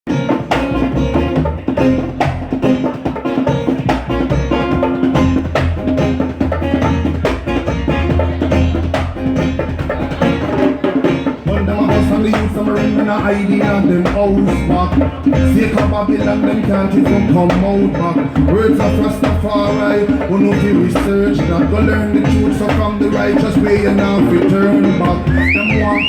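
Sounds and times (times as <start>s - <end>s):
drum kit beat: 0.0s - 26.0s
reggae band playing: 0.0s - 26.0s
bass line: 0.1s - 26.0s.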